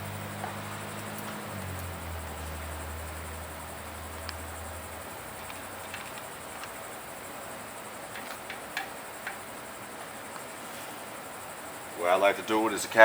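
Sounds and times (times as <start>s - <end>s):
steady high hiss: 0.0s - 13.0s
faint clicks of key and bolts: 5.3s - 7.0s, 8.1s - 9.6s.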